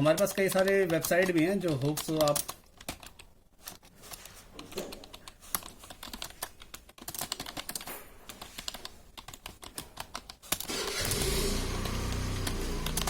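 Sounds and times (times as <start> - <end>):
keyboard keys clacking: 4.6 - 10.7.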